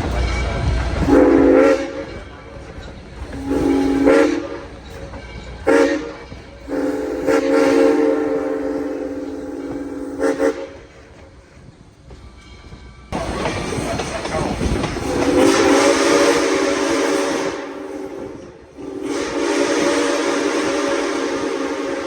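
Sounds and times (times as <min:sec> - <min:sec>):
steam whistle blasts: 0:01.0 - 0:02.1, 0:03.4 - 0:04.7, 0:05.7 - 0:10.9, 0:15.1 - 0:22.0.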